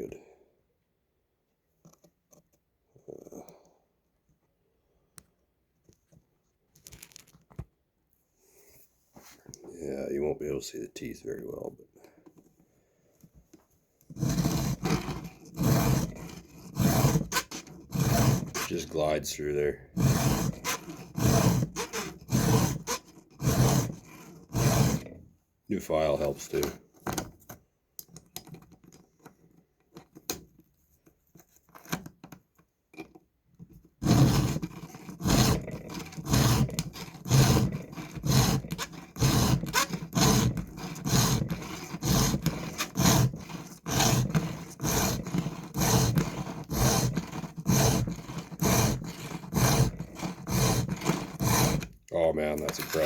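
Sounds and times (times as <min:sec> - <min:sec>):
file scraping chain teeth: 0:14.1 - 0:25.2, 0:34.0 - 0:52.0, 0:52.6 - 0:53.0.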